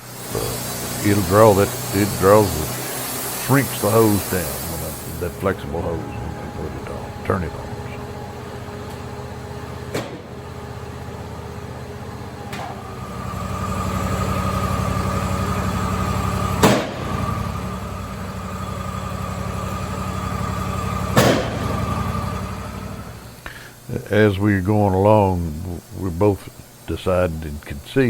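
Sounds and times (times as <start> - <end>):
dust collector vacuum whine: 0.0 - 28.0
machinery hum: 0.0 - 28.0
knocks: 16.6 - 17.1.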